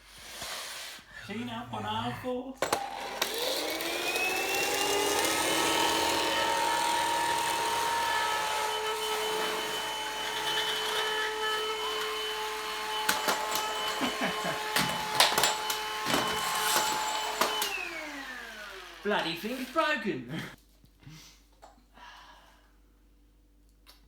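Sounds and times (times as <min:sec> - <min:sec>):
vacuum cleaner running: 0:02.6 - 0:20.0.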